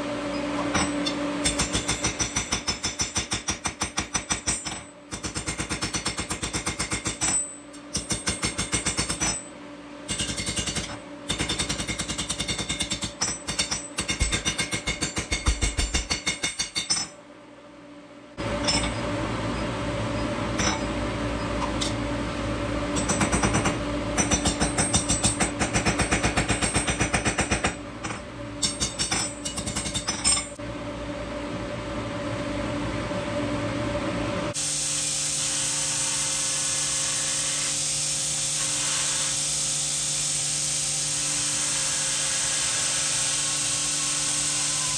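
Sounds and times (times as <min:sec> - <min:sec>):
hammer strikes on hot steel: 0:00.7 - 0:09.5, 0:10.1 - 0:17.2, 0:23.0 - 0:30.6.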